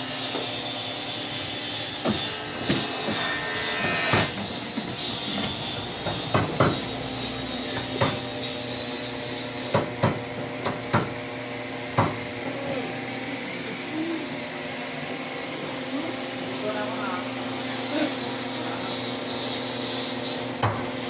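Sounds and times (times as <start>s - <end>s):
hammer knocking on wood: 4.1s - 7.0s, 7.7s - 8.2s, 9.7s - 11.2s, 11.9s - 12.3s.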